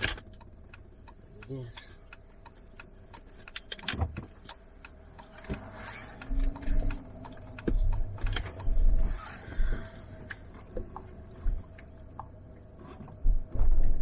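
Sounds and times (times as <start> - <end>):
clicks and rattles in vehicle cab: 0.0 - 14.0
heavy low thumps: 10.8 - 11.8.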